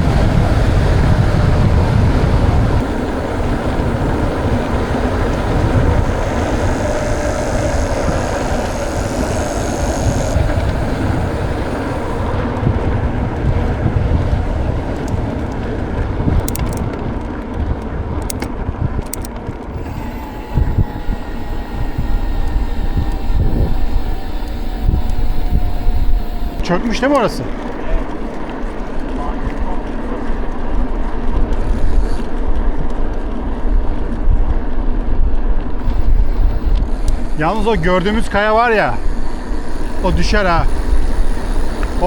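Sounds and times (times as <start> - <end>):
faint falling whine: 0.0 - 15.6, 19.1 - 30.7, 35.7 - 42.0
rumbling road noise: 0.0 - 42.0
wind buffeting microphone: 0.0 - 42.0
light clicks: 16.3 - 17.6, 18.2 - 30.6.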